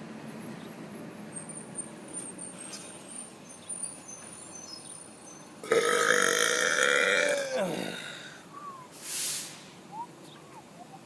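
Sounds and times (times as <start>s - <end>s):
bus or truck passing: 0.0s - 11.0s
road traffic rumble: 0.0s - 11.0s
small birds chirping: 1.4s - 5.6s, 9.8s - 11.0s
loud drawn-out burp: 5.6s - 8.4s.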